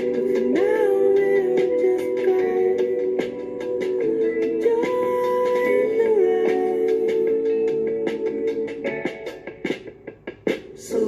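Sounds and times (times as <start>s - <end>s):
instrumental music with steady beat: 0.0s - 11.0s.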